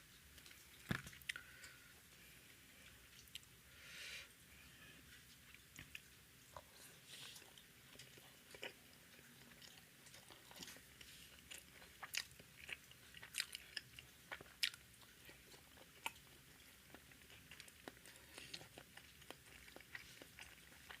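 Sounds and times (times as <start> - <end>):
person chewing food: 5.0 - 21.0.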